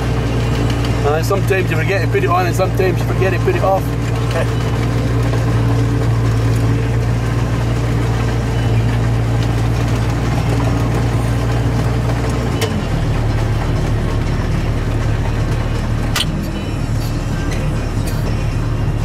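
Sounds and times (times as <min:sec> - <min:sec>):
tractor diesel engine running: 0:00.0 - 0:19.0
click in cab: 0:16.1 - 0:16.6.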